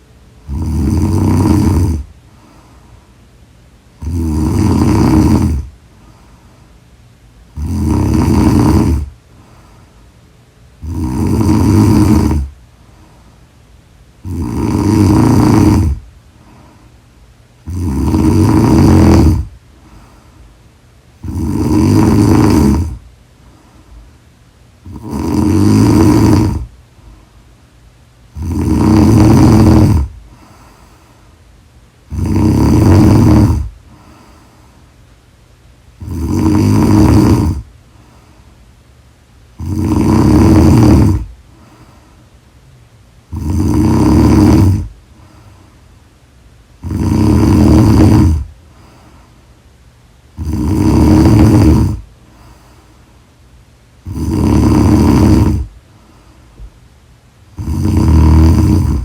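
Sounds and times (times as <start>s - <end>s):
quiet breathing: 0.0s - 59.0s
woman snoring loudly: 0.4s - 2.1s, 4.0s - 5.7s, 7.6s - 9.2s, 10.8s - 12.5s, 14.2s - 16.1s, 17.6s - 19.6s, 21.2s - 23.0s, 24.8s - 26.7s, 28.3s - 30.2s, 32.1s - 33.8s, 36.0s - 37.7s, 39.6s - 41.3s, 43.3s - 44.9s, 46.8s - 48.5s, 50.4s - 52.0s, 54.0s - 55.7s, 57.5s - 59.0s.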